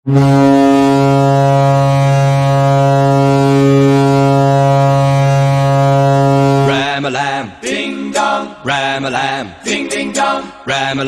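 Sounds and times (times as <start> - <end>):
goal horn low blast: 0.0 - 6.9.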